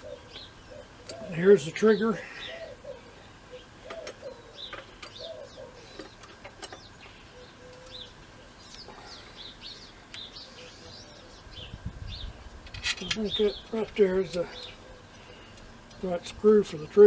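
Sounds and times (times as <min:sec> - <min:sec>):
dove cooing: 0:00.0 - 0:09.6, 0:13.0 - 0:15.9
small birds chirping: 0:00.0 - 0:17.0.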